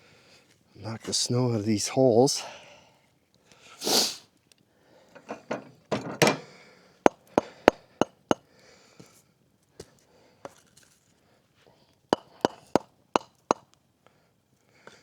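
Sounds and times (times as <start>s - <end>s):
breathy puff: 3.7s - 4.3s
sharp knocks on a log: 12.2s - 13.6s.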